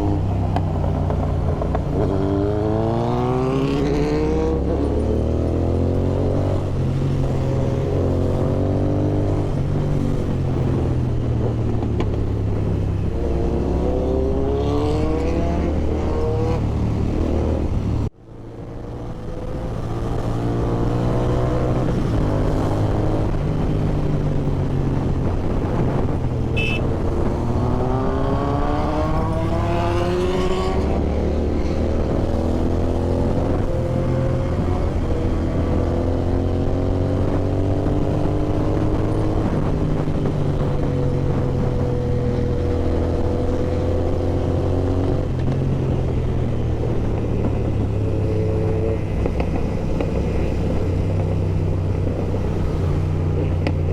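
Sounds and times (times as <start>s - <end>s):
motorcycle engine revving: 25.8s - 53.9s.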